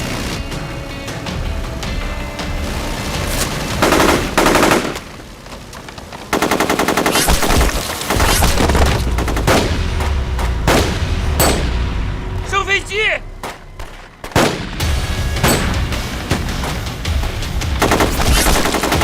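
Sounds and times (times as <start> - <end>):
machine-gun fire: 0.0 - 0.9, 2.5 - 5.2, 6.3 - 11.8, 13.5 - 19.0
single gunshots: 6.4 - 11.8, 13.4 - 16.8, 17.8 - 19.0
low rumble: 8.2 - 18.7.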